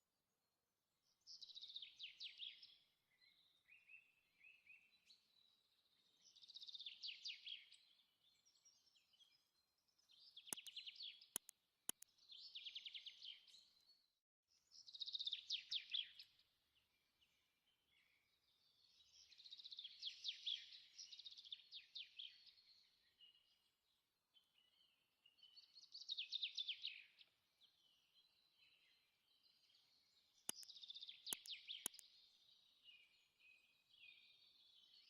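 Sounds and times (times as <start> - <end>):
sharp clicks: 10.5 - 10.8, 11.4 - 12.1, 30.5 - 30.7, 31.3 - 32.0.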